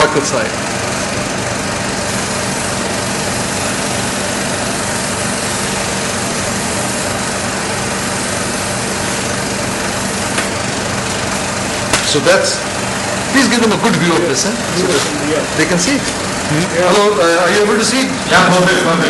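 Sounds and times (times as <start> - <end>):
motor hum with hiss: 0.0 - 19.0.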